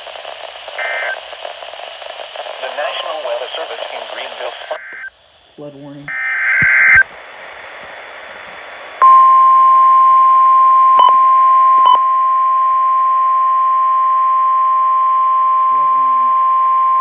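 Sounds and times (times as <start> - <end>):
radio hiss: 0.0 - 12.0, 14.8 - 17.0
warbling data burst: 0.8 - 1.2, 6.1 - 7.0
steady warning alarm tone: 6.1 - 7.0, 9.0 - 17.0.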